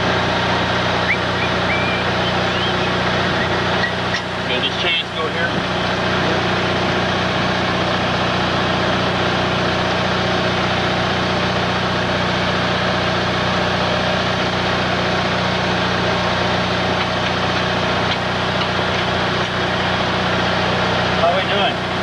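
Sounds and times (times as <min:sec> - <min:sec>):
vehicle engine idling: 0:00.0 - 0:22.0.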